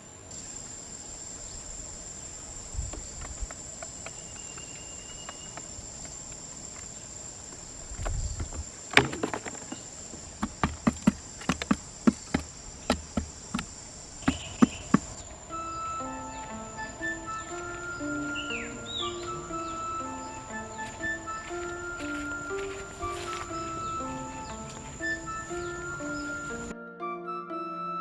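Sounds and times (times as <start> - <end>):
insects droning: 0.0 - 26.7
sharp knocks: 8.5 - 15.2.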